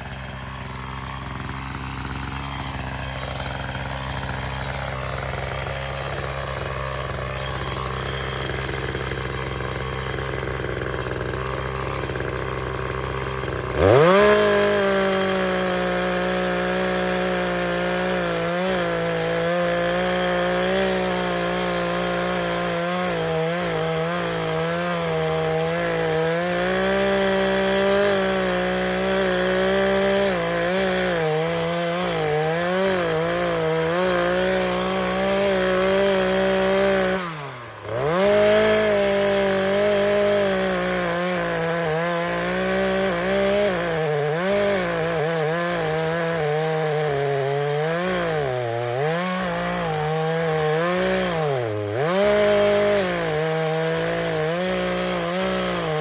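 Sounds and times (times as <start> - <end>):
chainsaw cutting wood: 0.0 - 56.0.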